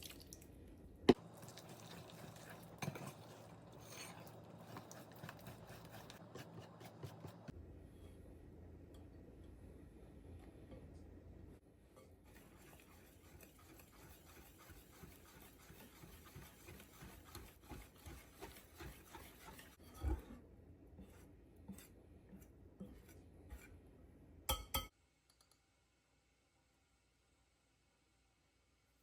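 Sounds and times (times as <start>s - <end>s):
soft rubbing and scraping: 1.6s - 8.2s, 11.9s - 23.8s.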